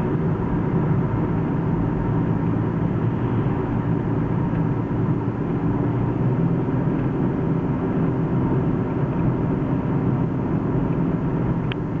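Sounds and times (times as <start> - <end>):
car driving: 0.0 - 12.0.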